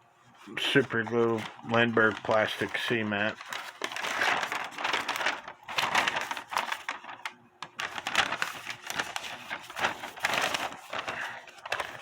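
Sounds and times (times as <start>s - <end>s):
paper rustling and crinkling: 0.3s - 12.0s.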